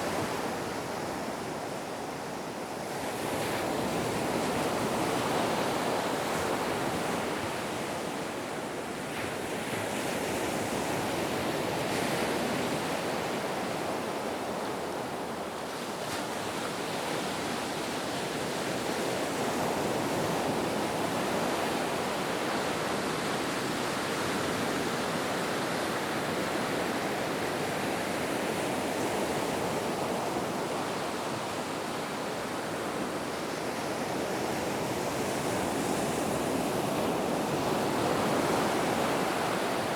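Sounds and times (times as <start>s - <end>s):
ocean surf washing onto beach: 0.0s - 39.9s.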